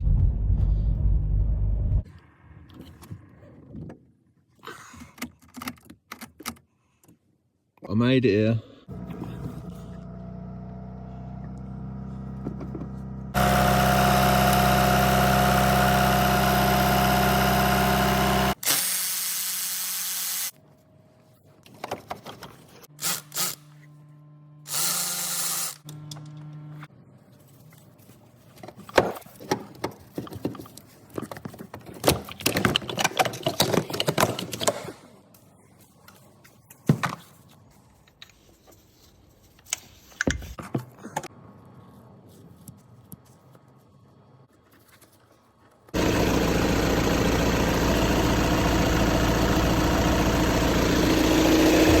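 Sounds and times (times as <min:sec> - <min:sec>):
car engine starting and idling: 0:08.9 - 0:18.6, 0:46.0 - 0:52.0.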